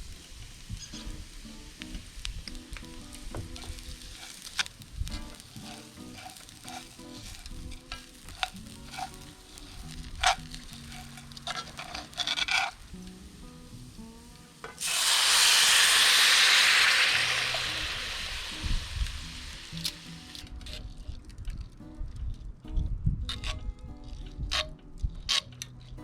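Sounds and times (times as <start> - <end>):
loud sizzle: 0.0 - 20.9
spoon stirring and tapping in pan: 2.8 - 12.8.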